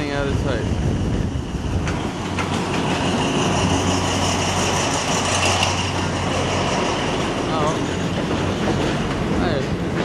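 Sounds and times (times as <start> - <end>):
train engine drone and rumble: 0.0 - 10.0.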